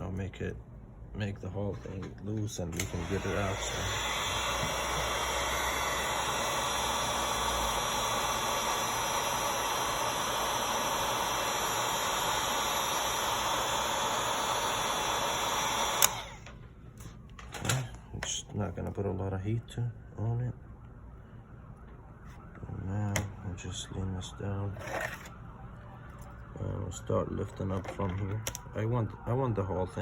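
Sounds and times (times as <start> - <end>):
blower switch click: 2.8 - 3.2, 15.8 - 16.4
hot-air blower rushing air: 2.8 - 16.5.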